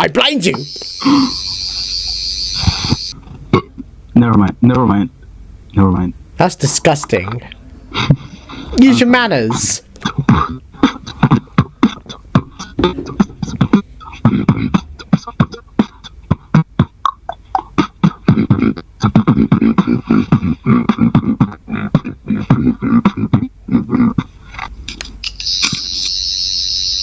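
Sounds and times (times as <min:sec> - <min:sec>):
short hums: 0:00.5 - 0:03.2, 0:11.6 - 0:22.6
person making percussive mouth sounds: 0:02.6 - 0:03.9, 0:09.8 - 0:24.7.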